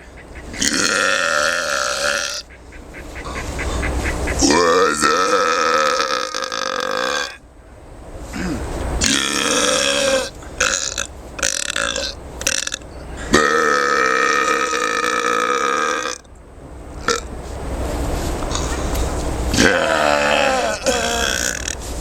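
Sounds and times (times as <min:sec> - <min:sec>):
men belching loudly: 0:00.0 - 0:02.4, 0:04.4 - 0:07.4, 0:08.4 - 0:16.3, 0:19.5 - 0:21.8.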